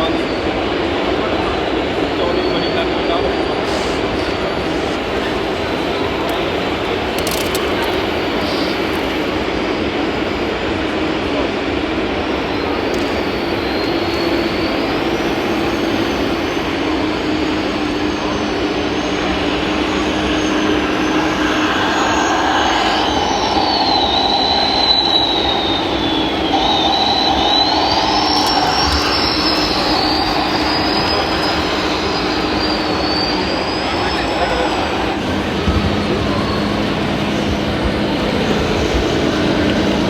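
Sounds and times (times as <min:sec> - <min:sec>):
steady hum: 0:18.4 - 0:33.7
small electric motors whining: 0:25.6 - 0:34.1.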